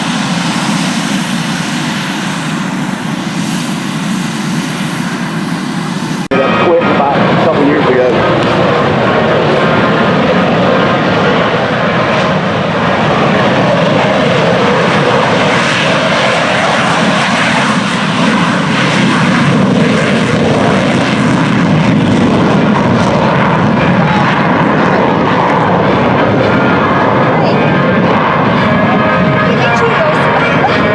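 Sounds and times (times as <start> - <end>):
propeller airplane engine: 0.0 - 30.9.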